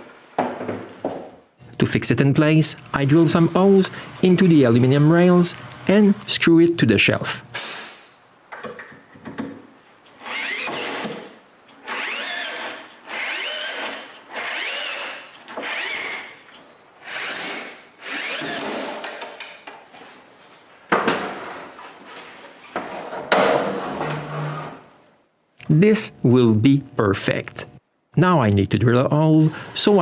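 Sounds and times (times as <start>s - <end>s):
power drill running in bursts: 2.9s - 6.4s, 10.2s - 11.1s, 11.8s - 16.4s, 17.0s - 18.8s.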